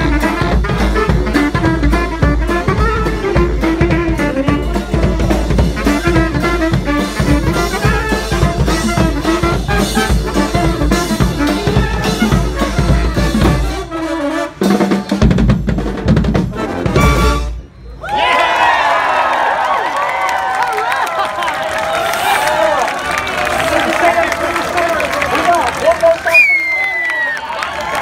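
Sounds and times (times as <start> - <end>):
street brass band playing: 0.0 - 18.0, 21.7 - 26.0.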